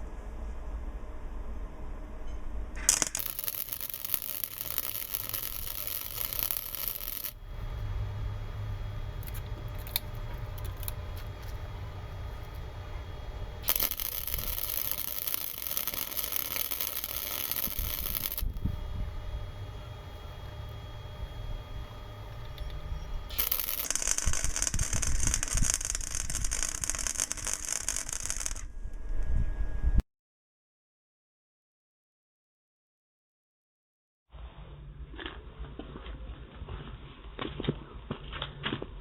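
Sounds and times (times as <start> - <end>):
low hum: 0.1 - 30.0
welding arc hissing: 2.8 - 28.7.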